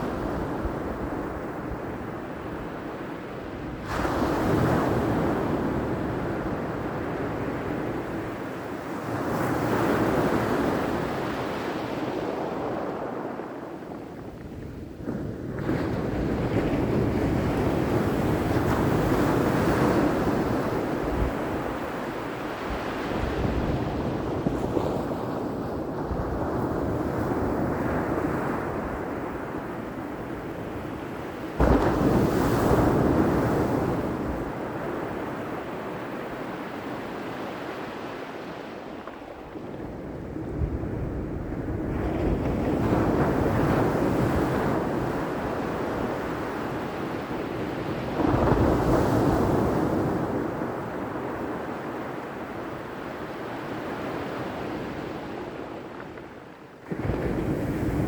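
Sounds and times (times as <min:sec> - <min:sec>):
ocean waves breaking on shore: 0:15.4 - 0:58.0.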